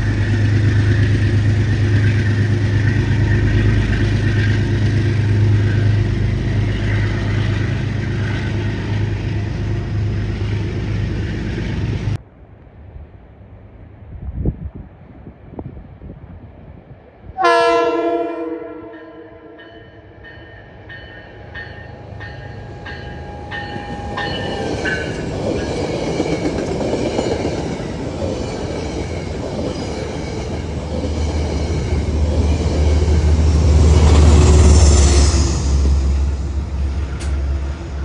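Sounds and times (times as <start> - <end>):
train approaching with rail noise: 0.0 - 38.0
train horn: 17.4 - 20.2.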